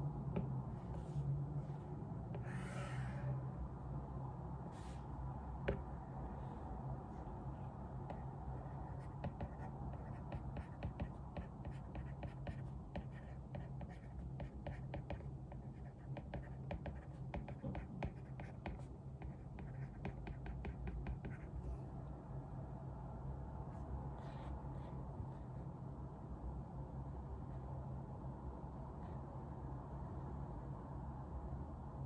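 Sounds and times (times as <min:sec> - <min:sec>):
low room hum: 0:00.0 - 0:32.0
pen scratching on paper: 0:02.3 - 0:03.2, 0:08.1 - 0:21.7.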